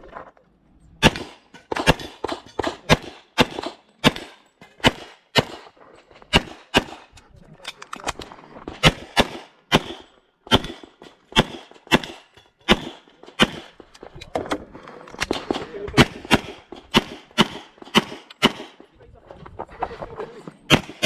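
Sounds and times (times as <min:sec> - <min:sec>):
pistol shots with short echo: 0:01.0 - 0:07.2, 0:08.8 - 0:13.8, 0:15.3 - 0:18.9, 0:20.7 - 0:21.0.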